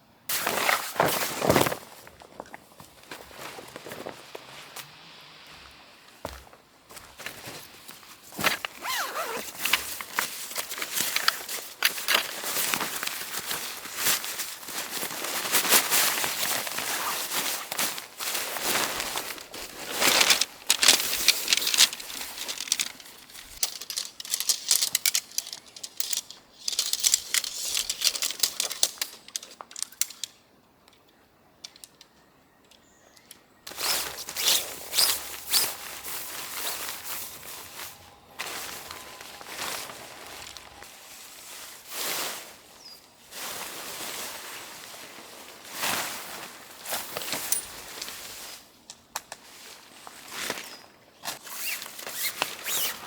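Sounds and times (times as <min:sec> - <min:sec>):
crackling and rustling with clicks: 0:07.2 - 0:41.0.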